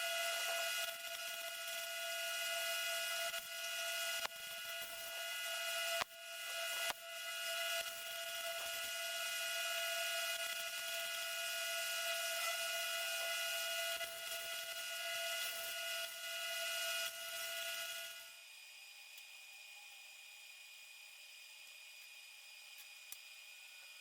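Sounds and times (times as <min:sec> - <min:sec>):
angle grinder cutting steel: 0:00.0 - 0:18.2.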